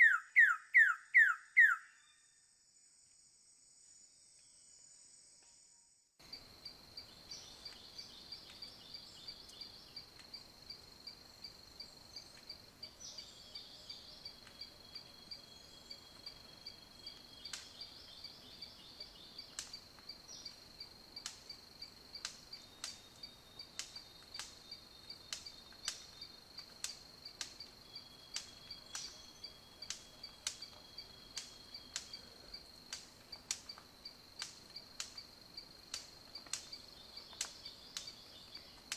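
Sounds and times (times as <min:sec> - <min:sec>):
cricket trilling: 0:06.2 - 0:38.9
sharp clicks: 0:25.3 - 0:27.7, 0:31.4 - 0:32.2, 0:32.9 - 0:35.3.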